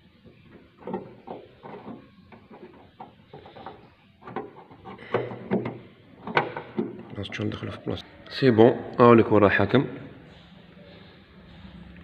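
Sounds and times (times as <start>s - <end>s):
clicks rubs and knocks: 0.2s - 7.2s.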